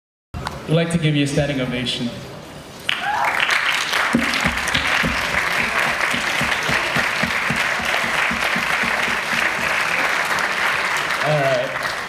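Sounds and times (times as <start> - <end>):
audience applauding: 2.9 - 12.0
low beat: 4.2 - 10.0.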